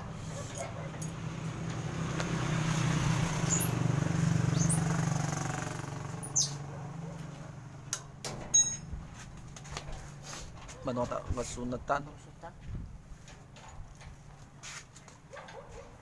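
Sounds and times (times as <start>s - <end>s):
vehicle engine passing by: 0.0s - 7.9s
sharp metallic clinks: 0.5s - 1.3s, 8.5s - 8.9s
birds chirping: 3.3s - 5.1s, 6.1s - 6.7s.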